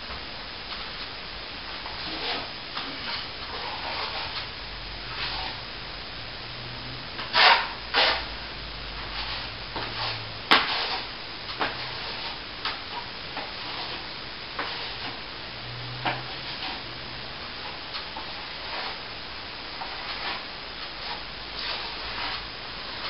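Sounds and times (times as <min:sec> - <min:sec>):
plastering tool scraping: 0:01.9 - 0:04.5, 0:05.1 - 0:05.6, 0:07.2 - 0:08.3, 0:09.0 - 0:15.3, 0:17.6 - 0:19.1, 0:19.8 - 0:23.0.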